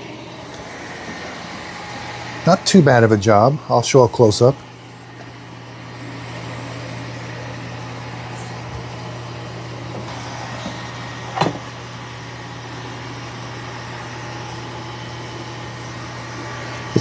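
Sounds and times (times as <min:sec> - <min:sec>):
robot vacuum motor humming: 0:00.0 - 0:17.0.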